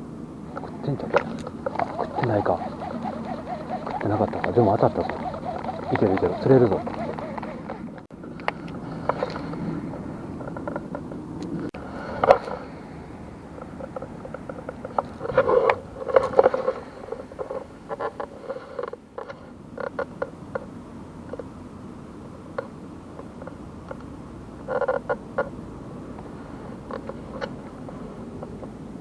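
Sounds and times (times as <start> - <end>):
handling clicks knocks and scrapes: 13.6 - 20.7, 26.2 - 28.8.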